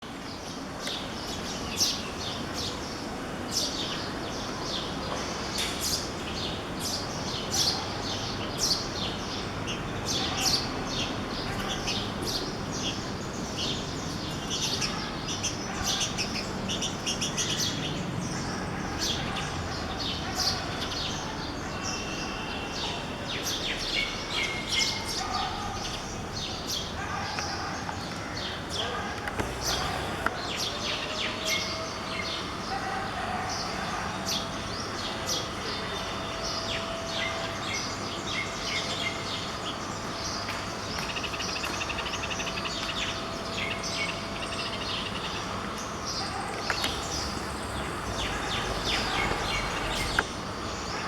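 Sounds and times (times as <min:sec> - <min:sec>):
small birds chirping: 0:00.3 - 0:32.6, 0:33.5 - 0:50.9.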